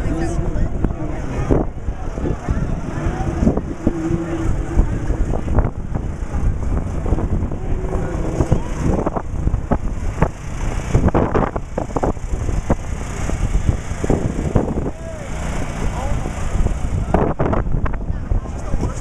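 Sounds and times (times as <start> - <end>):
faint voices: 0.0 - 9.7, 14.7 - 19.0
wind buffeting microphone: 0.0 - 19.0.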